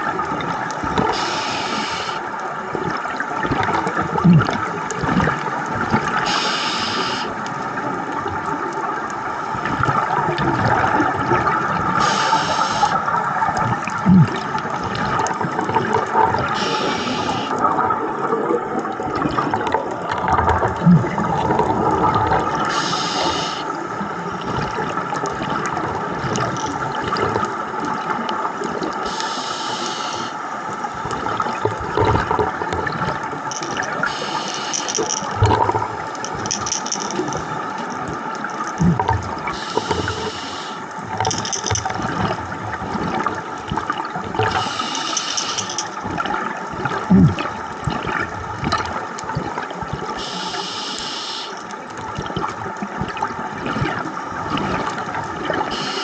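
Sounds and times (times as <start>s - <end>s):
bubbles gurgling underwater: 0.0s - 29.5s, 30.6s - 50.3s, 51.7s - 56.0s
regulator breathing hiss: 1.1s - 2.2s, 6.2s - 7.3s, 12.0s - 13.0s, 16.6s - 17.5s, 22.7s - 23.7s, 29.1s - 30.4s, 34.0s - 35.1s, 39.5s - 40.9s, 44.5s - 45.8s, 50.2s - 51.6s, 55.7s - 56.0s.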